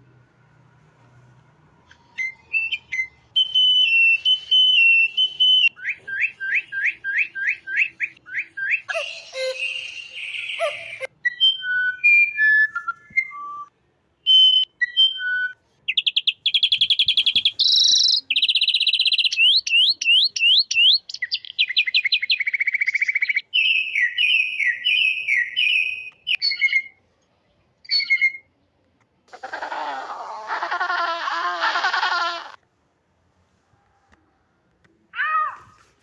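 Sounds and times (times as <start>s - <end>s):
birds whistling and trilling: 1.9s - 13.7s, 14.3s - 27.0s, 27.8s - 28.5s.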